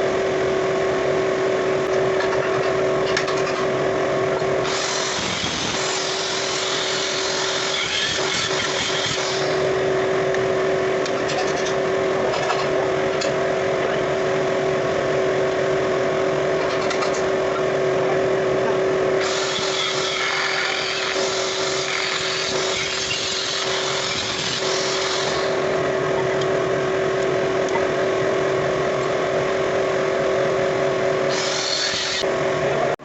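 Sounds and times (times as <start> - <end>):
power tool motor running: 4.5 - 10.2, 19.2 - 25.9, 31.2 - 32.4
tool grinding metal: 4.6 - 9.7, 19.2 - 25.7, 31.3 - 32.3.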